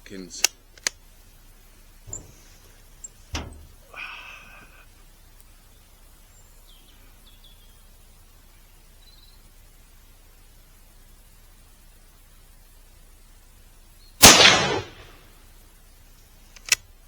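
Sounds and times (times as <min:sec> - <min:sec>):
faint bird chirps: 0:02.1 - 0:09.7
rifle shot: 0:14.2 - 0:15.2.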